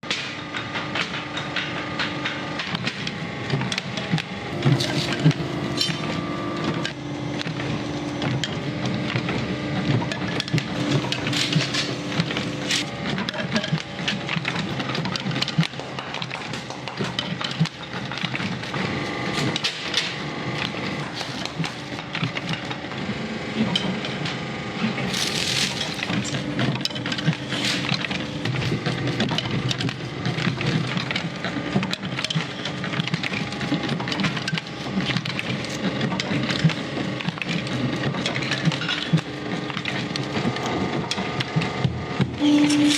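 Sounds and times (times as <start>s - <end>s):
machine hum: 1.3s - 42.9s
wooden pieces clattering: 25.1s - 26.5s.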